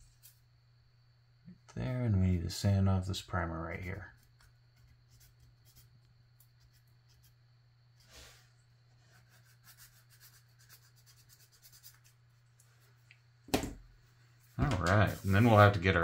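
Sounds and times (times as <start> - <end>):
sandpaper scratching plastic: 9.1 - 12.2, 15.0 - 15.7.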